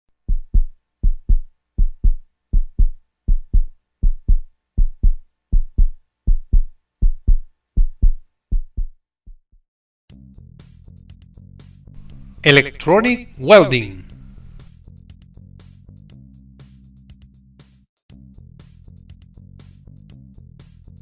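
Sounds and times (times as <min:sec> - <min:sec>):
heartbeat thumps: 0:00.3 - 0:09.6.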